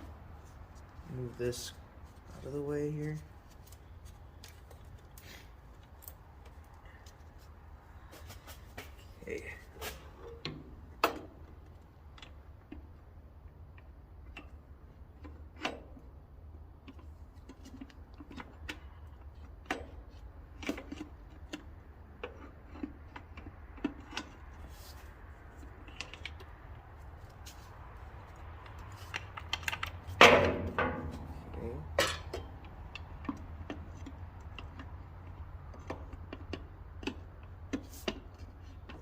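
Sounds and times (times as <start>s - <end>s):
hand tools clicking and knocking: 28.3s - 39.0s.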